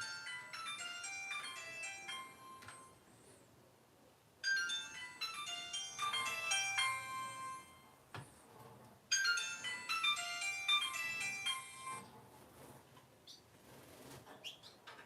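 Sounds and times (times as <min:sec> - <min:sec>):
phone ringtone melody: 0:00.0 - 0:03.1, 0:04.4 - 0:08.1, 0:09.1 - 0:12.1.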